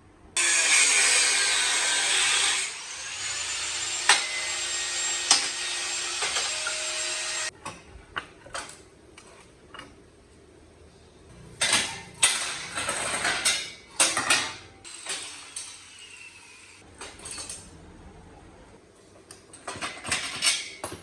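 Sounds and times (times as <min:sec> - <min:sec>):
power tool grinding: 0:00.4 - 0:07.5.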